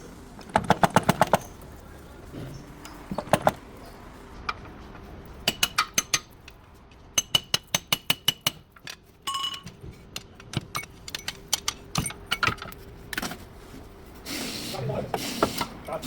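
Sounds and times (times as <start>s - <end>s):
metal tools clinking on metal: 8.7s - 12.8s.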